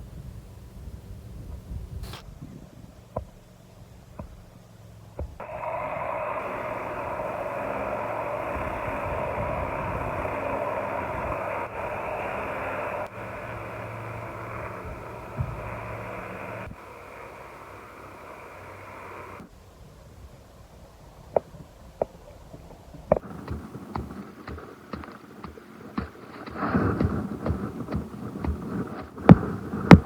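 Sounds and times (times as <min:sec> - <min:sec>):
engine drone: 0:00.0 - 0:19.5, 0:23.1 - 0:30.0
sledgehammer thud into soil: 0:23.2 - 0:30.0.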